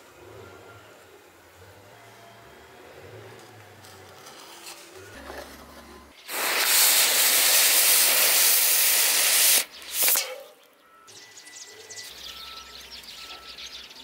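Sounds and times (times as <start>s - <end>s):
powder charge hissing: 6.2s - 10.6s.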